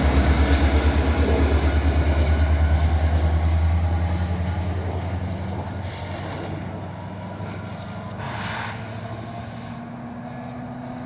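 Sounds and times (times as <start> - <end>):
train rumbling past: 0.0 - 11.0
brief hiss: 8.2 - 9.8.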